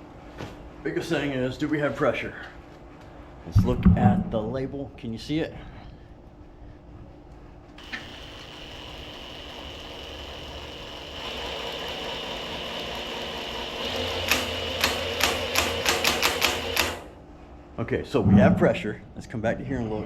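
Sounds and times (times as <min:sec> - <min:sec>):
small power tool whirring: 0:07.8 - 0:17.1.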